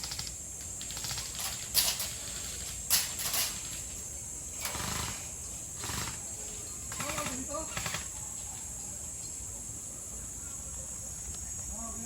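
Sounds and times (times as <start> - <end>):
airsoft guns firing: 0.0 - 3.9, 6.9 - 8.1.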